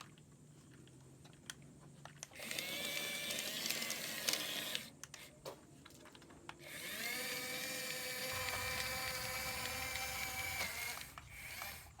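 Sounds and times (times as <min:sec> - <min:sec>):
small electric motor whining: 0:02.4 - 0:05.3, 0:06.6 - 0:12.0
toy motor clicks: 0:02.4 - 0:05.3, 0:06.6 - 0:12.0.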